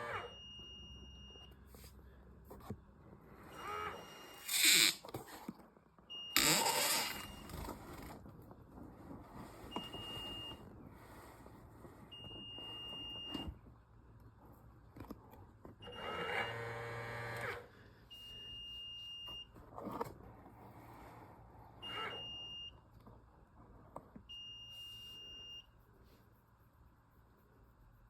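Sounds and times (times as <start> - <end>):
electric buzz: 6.4 - 7.3.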